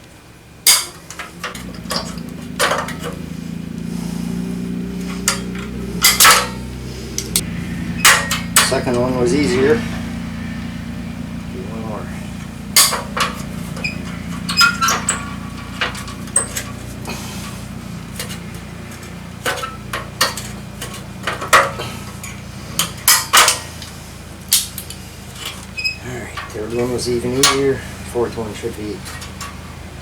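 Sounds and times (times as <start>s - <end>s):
metal spring clanking on frame: 0.6s - 30.0s.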